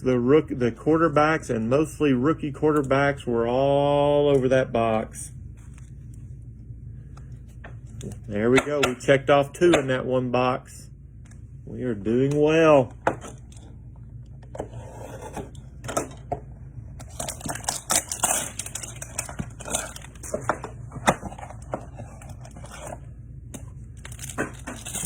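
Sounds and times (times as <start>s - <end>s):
steady low hum: 0.0s - 25.0s
cardboard and plastic rustling: 17.0s - 25.0s.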